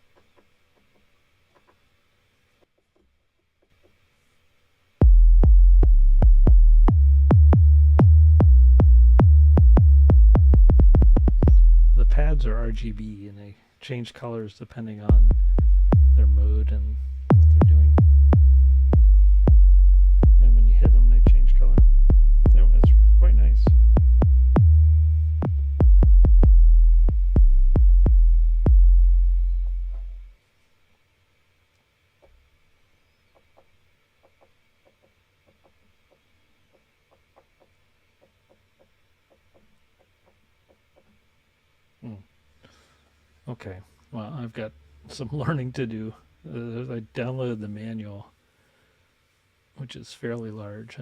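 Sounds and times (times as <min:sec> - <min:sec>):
faint drum pad taps: 0:00.0 - 0:01.8, 0:02.6 - 0:04.0, 0:33.3 - 0:41.2
deep electronic kick drum: 0:05.0 - 0:13.0, 0:15.1 - 0:30.3.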